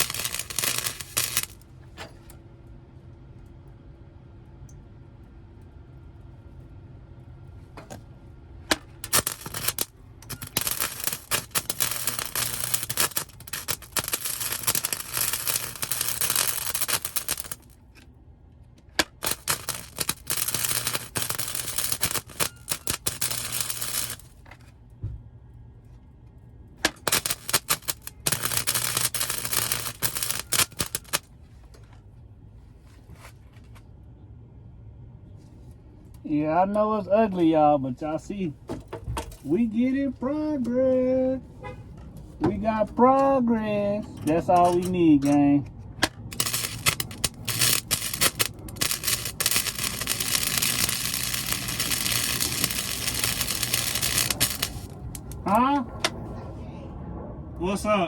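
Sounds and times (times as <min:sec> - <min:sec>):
welding arc crackling: 0:00.0 - 0:01.7, 0:08.7 - 0:18.0, 0:18.8 - 0:24.4, 0:26.8 - 0:31.3, 0:46.0 - 0:55.8
steady low hum: 0:00.0 - 0:58.0.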